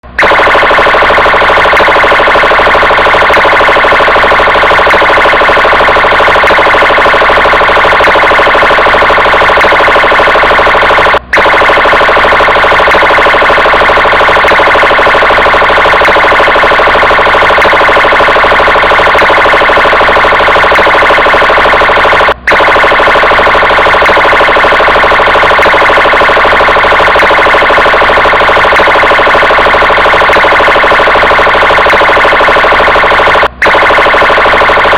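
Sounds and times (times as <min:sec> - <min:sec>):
police siren: 0:00.0 - 0:34.9.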